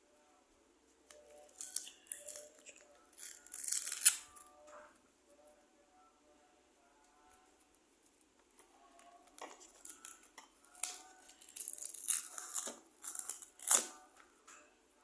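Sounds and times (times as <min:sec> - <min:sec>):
faint music: 0:00.0 - 0:15.0
crackling and rustling with clicks: 0:07.0 - 0:14.8.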